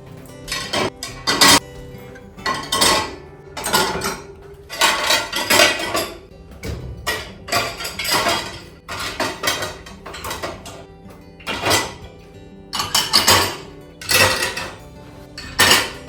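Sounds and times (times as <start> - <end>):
dishes and cutlery clattering: 0.0 - 16.0
soft background music: 0.0 - 16.0.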